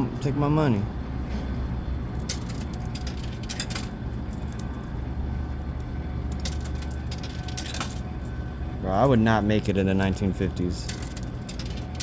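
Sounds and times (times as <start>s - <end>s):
steady low hum: 0.0s - 12.0s
coins clinking in coin mechanism: 2.2s - 4.9s, 6.2s - 8.3s, 10.1s - 12.0s.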